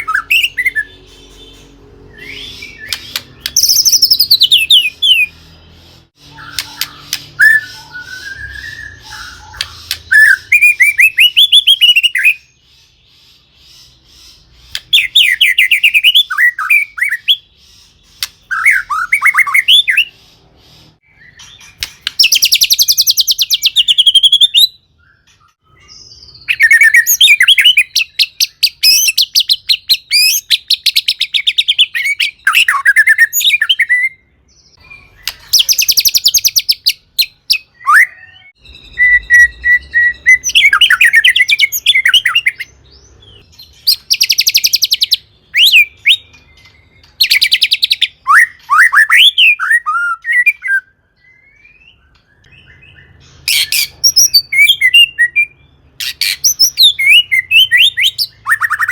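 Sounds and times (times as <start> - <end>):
bird singing trilling phrases: 0.0 - 58.9.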